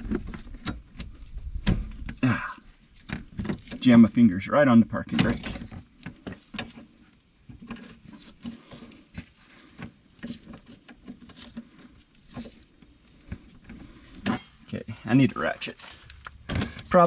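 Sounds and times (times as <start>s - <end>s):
hand tools clicking and scraping: 5.6s - 17.0s.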